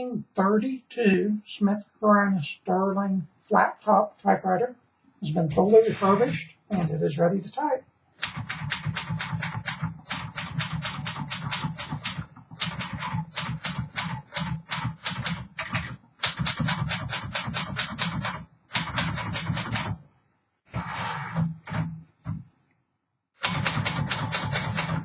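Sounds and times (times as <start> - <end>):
manual typewriter key strikes: 8.2 - 20.0, 23.4 - 25.0.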